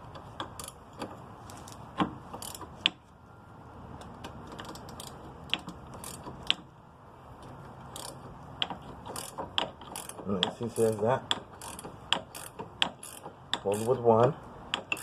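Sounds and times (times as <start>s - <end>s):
metallic clicks of hand tools: 8.0s - 14.0s, 14.7s - 15.0s.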